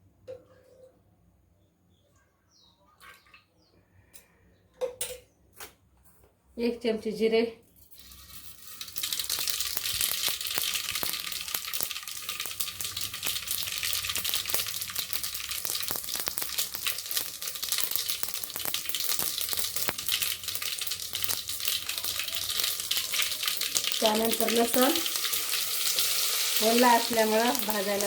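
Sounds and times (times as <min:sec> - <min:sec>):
seeds sizzling in hot oil: 0:07.9 - 0:28.0.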